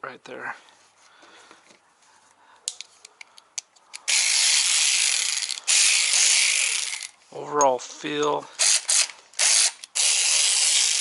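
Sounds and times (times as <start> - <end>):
cordless ratchet whirring: 4.0 - 7.2, 8.6 - 11.0.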